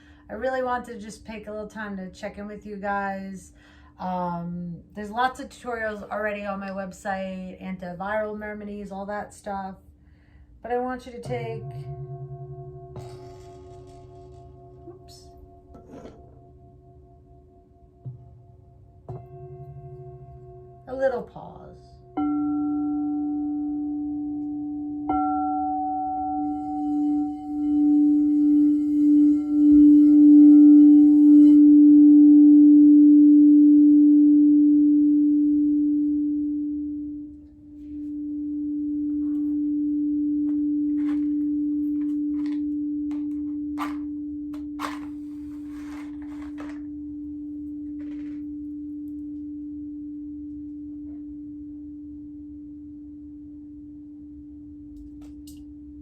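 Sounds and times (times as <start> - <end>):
singing bowl ringing: 11.2 - 20.9, 22.0 - 53.8.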